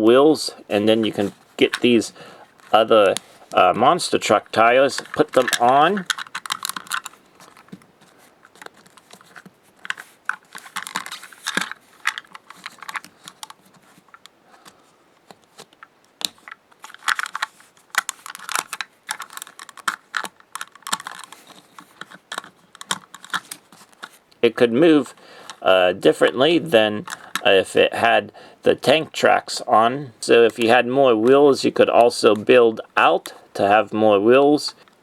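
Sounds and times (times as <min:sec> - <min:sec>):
plastic toy parts clicking: 0:01.0 - 0:14.3, 0:15.3 - 0:24.2, 0:25.4 - 0:25.6, 0:27.0 - 0:27.6.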